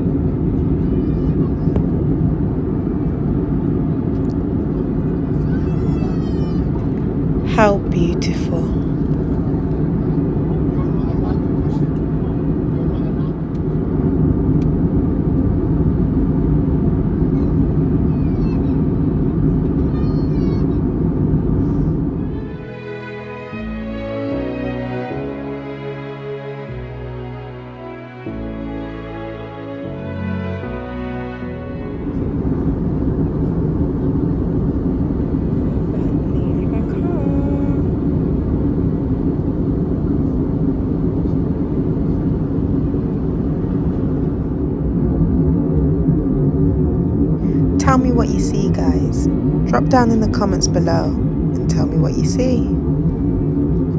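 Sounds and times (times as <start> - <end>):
airliner cabin engine rumble: 0.0 - 23.0, 31.9 - 53.9
airliner cabin rumble: 31.9 - 53.9.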